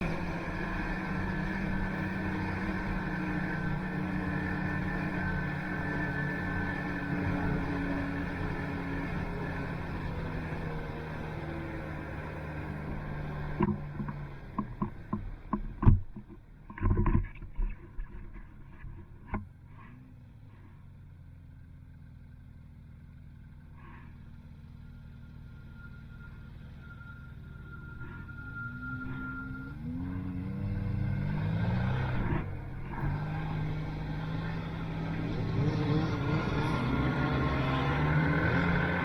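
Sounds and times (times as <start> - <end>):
snowmobile engine running: 0.0 - 16.0, 31.6 - 39.0.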